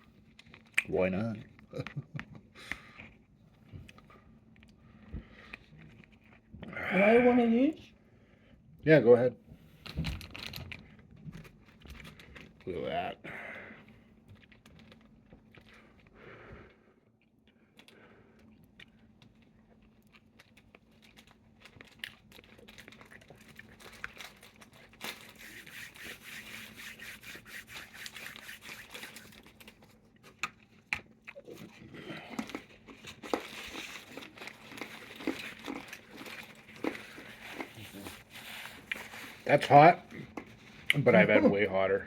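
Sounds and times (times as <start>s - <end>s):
wrapper crinkling and tearing: 14.4s - 15.8s, 19.2s - 30.8s, 31.4s - 40.0s
faint chewing: 17.2s - 27.0s, 27.8s - 41.0s.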